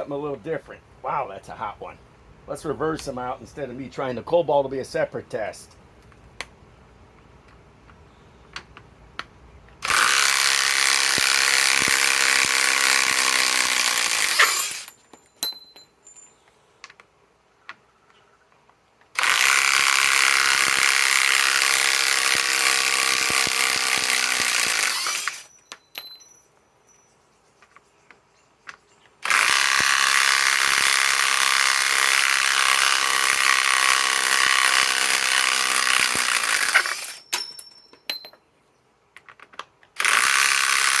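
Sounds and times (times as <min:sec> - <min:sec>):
impact wrench hammering: 0:09.8 - 0:15.9, 0:19.2 - 0:26.4, 0:29.2 - 0:38.4.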